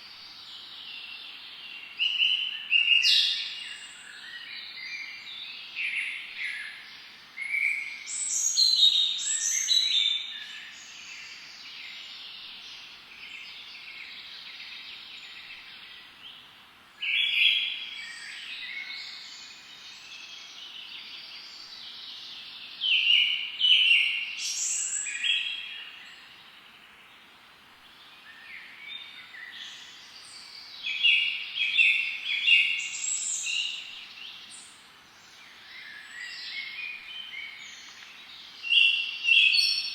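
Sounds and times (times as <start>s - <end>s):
steady high hiss: 6.4s - 39.9s
birds chirping and trilling: 28.0s - 39.9s.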